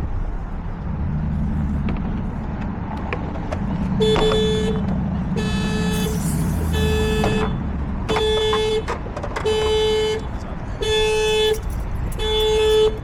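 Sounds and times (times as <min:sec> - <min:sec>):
steady low rumble: 0:00.0 - 0:08.1
car horn blasts: 0:04.0 - 0:13.0.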